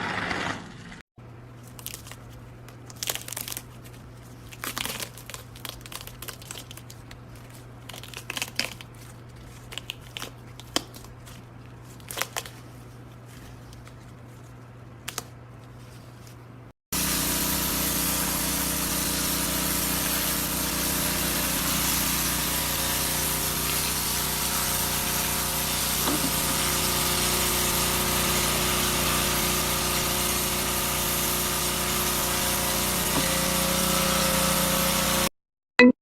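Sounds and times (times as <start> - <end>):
machine humming: 17.0 - 35.3.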